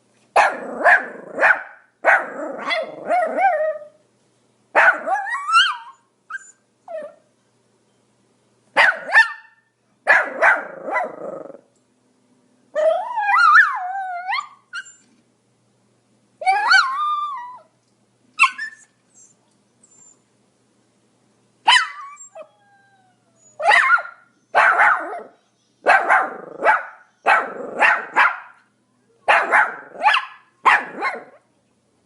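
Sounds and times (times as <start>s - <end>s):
dog barking: 0.4s - 3.4s, 4.8s - 5.8s, 8.8s - 11.2s, 21.7s - 22.1s, 23.6s - 28.6s, 29.3s - 31.4s
dog wavering cry: 0.5s - 4.0s, 4.8s - 7.2s, 12.8s - 15.0s, 16.4s - 17.7s, 21.7s - 25.3s.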